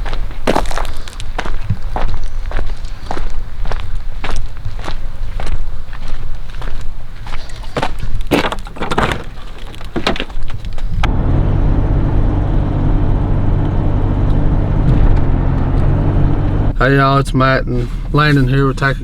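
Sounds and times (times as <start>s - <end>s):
knocks and rustles: 7.4s - 11.0s
vehicle engine idling: 10.9s - 19.0s.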